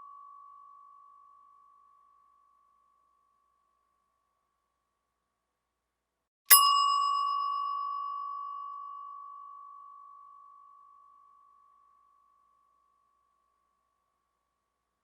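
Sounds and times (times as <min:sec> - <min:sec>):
metal bell ringing: 0:06.5 - 0:08.1.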